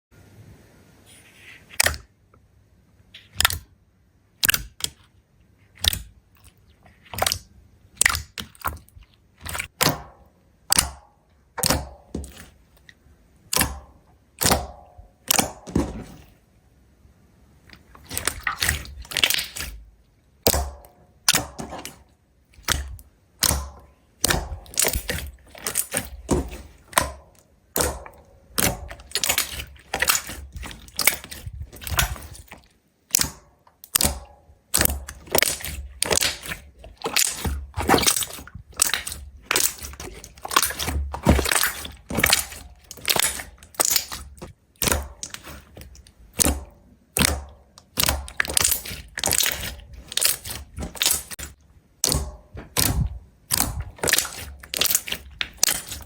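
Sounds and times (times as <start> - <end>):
slime crackling and popping: 18.0 - 19.8, 22.6 - 56.0.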